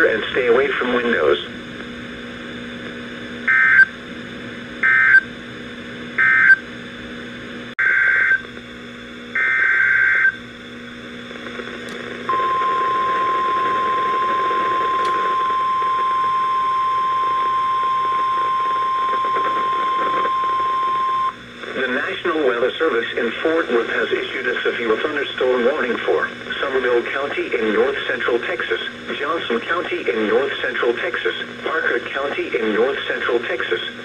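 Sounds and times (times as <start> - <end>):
steady weather radio alert tone: 3.5 - 3.9, 6.2 - 6.6, 12.3 - 34.0.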